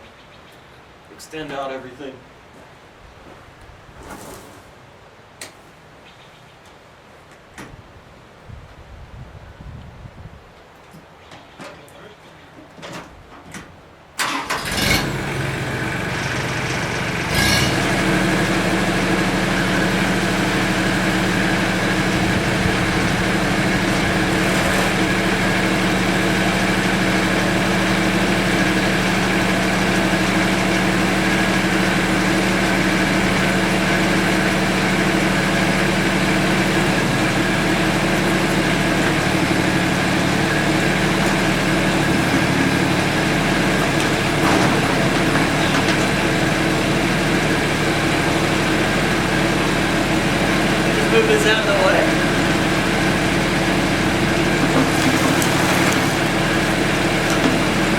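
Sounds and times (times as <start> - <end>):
tractor diesel engine running: 14.2 - 57.9.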